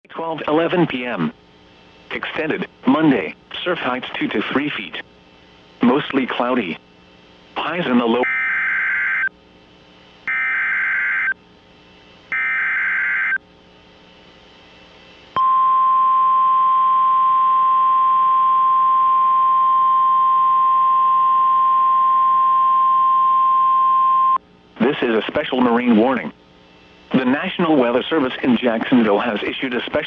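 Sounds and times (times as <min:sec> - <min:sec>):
steady warning alarm tone: 0:08.2 - 0:09.3, 0:10.3 - 0:11.4, 0:12.3 - 0:13.4.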